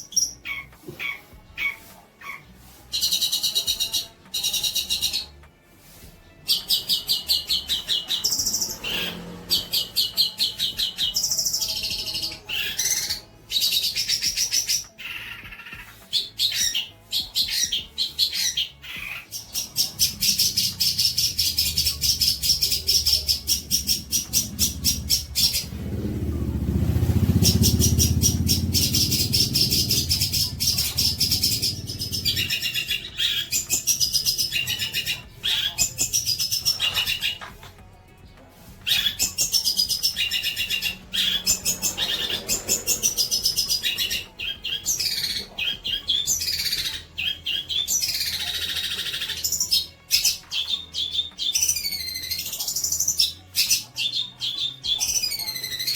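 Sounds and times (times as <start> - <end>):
songbird chattering song: 0.0 - 5.6, 6.2 - 55.9
low rumble: 20.1 - 32.9.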